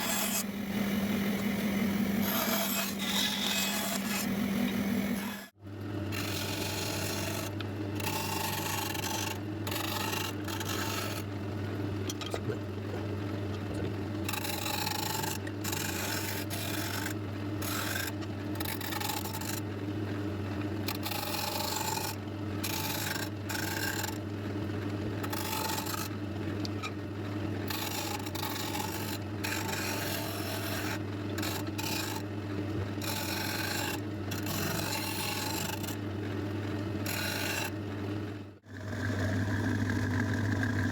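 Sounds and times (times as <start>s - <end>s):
steady machine hum: 0.0s - 21.1s.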